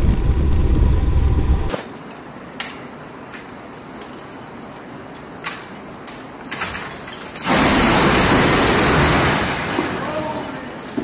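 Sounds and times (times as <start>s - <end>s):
rush of water: 7.4s - 10.8s.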